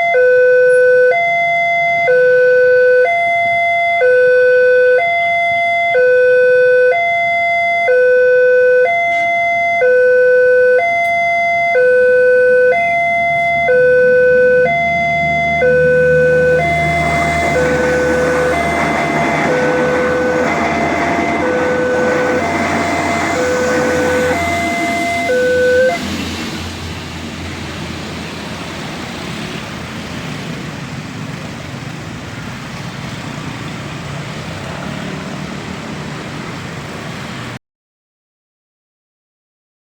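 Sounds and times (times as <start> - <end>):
train passing rumble: 12.6 - 37.6.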